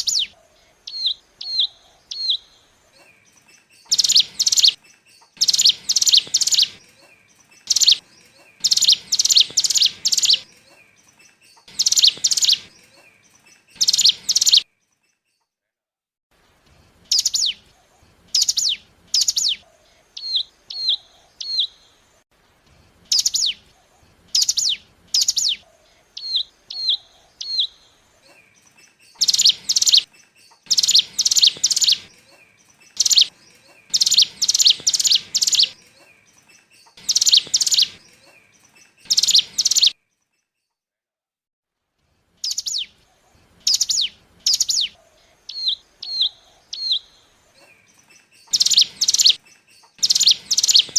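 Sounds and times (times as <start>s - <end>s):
bird chirping: 0.0s - 15.5s, 16.6s - 40.8s, 42.4s - 50.9s.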